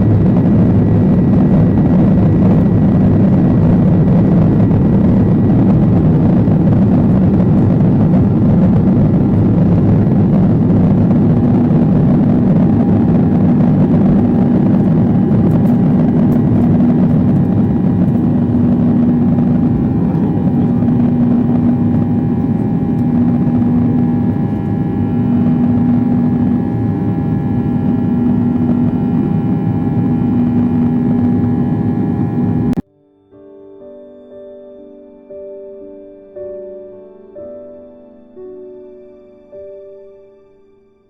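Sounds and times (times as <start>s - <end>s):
airplane cabin engine hum: 0.0s - 32.8s.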